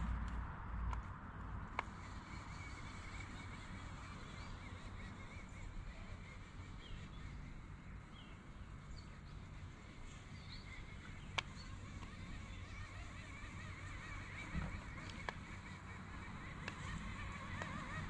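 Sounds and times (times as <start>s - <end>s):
steady low rumble: 0.0s - 3.1s.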